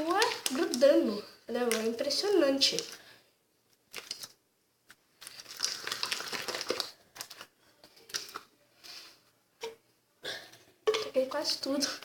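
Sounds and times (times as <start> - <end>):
hands kneading sticky slime: 0.0 - 3.0, 3.8 - 8.5.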